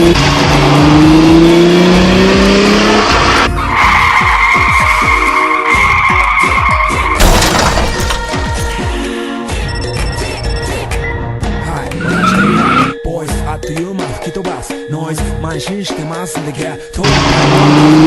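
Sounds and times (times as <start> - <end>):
car engine revving: 0.0 - 7.1, 11.9 - 12.9, 17.0 - 18.0
tyres screeching: 3.3 - 7.8, 11.9 - 13.0
loud crash hit: 7.2 - 8.2.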